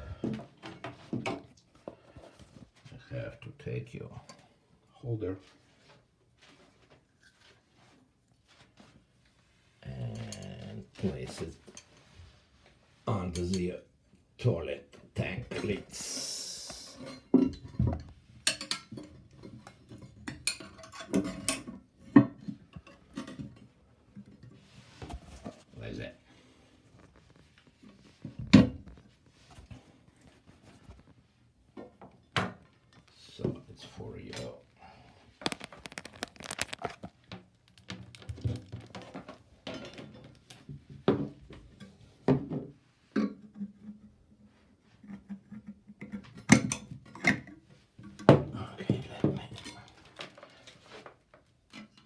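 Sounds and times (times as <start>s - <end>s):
crinkling rustles: 24.6s - 31.4s, 34.3s - 40.3s
plastic parts clicking and knocking: 35.4s - 40.6s.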